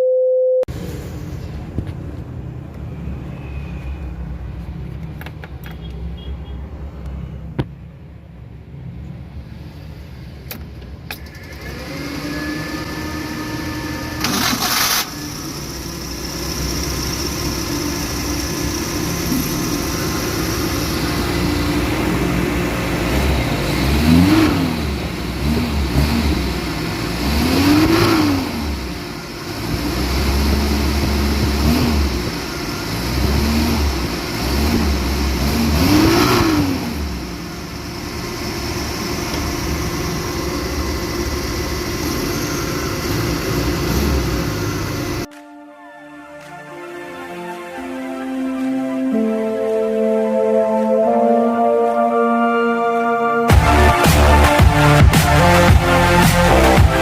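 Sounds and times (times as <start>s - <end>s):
car engine running and revving: 10.5s - 45.3s, 53.5s - 57.0s.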